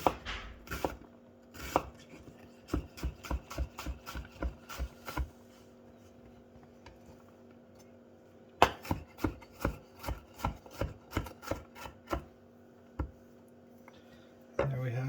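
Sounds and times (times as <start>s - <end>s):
knife chopping on cutting board: 0.0s - 5.3s, 8.6s - 12.3s.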